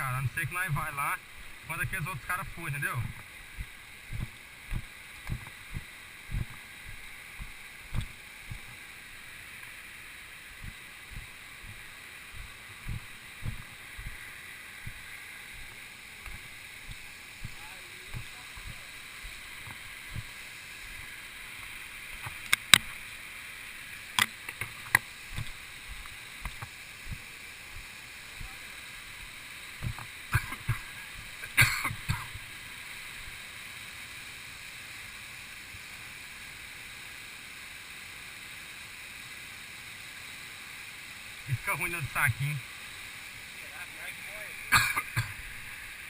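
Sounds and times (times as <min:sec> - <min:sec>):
soft low thumps: 0:00.0 - 0:09.4, 0:10.5 - 0:21.2, 0:25.3 - 0:32.5
running water: 0:00.0 - 0:46.0
sharp clicks and knocks: 0:03.0 - 0:08.8, 0:10.6 - 0:14.2, 0:14.8 - 0:21.1, 0:24.2 - 0:28.6, 0:29.8 - 0:30.9.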